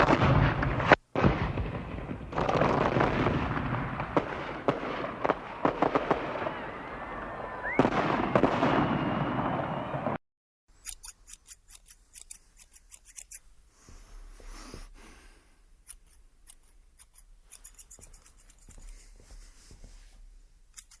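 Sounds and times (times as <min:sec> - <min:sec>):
crisp snipping clicks: 0:10.8 - 0:13.5, 0:20.7 - 0:21.0
soft rustle: 0:10.8 - 0:21.0.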